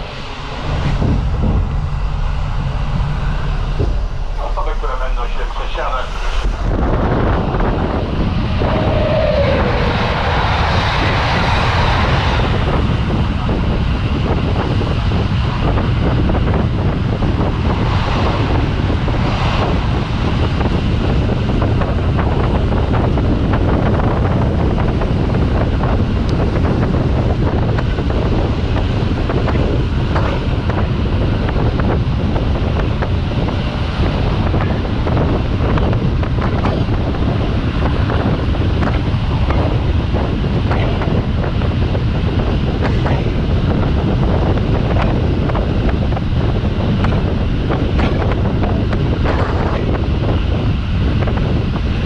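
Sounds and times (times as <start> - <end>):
train rumbling: 0.0 - 52.0
wind rushing: 0.0 - 52.0
wheels clattering on track: 11.9 - 51.9.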